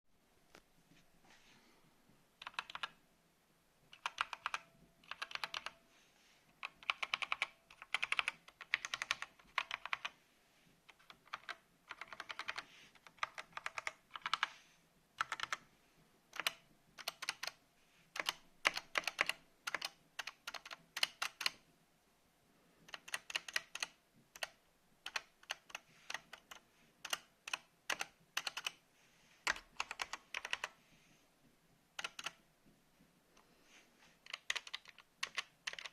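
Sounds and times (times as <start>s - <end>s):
mechanical keyboard typing: 2.4s - 3.0s, 3.9s - 5.8s, 6.6s - 10.2s, 10.9s - 14.6s, 15.2s - 15.6s, 16.3s - 21.6s, 22.9s - 28.8s, 29.4s - 30.8s, 32.0s - 32.4s, 34.2s - 35.9s.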